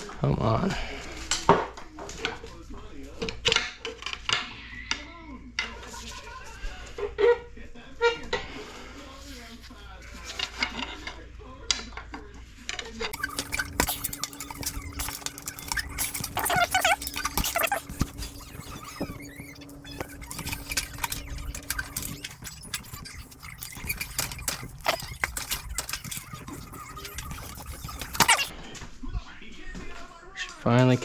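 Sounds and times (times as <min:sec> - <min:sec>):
metallic tool clinks and scrapes: 0:13.1 - 0:28.5
steady hum: 0:13.2 - 0:28.5.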